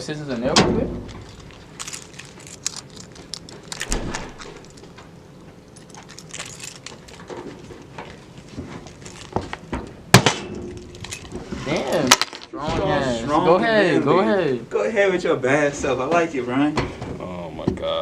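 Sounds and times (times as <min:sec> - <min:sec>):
zip ties clicking and rustling: 0:01.2 - 0:05.0, 0:05.7 - 0:07.4.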